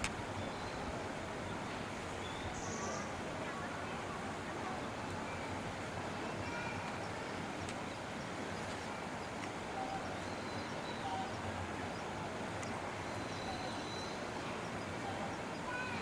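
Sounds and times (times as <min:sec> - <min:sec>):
outdoor background noise: 0:00.0 - 0:16.0.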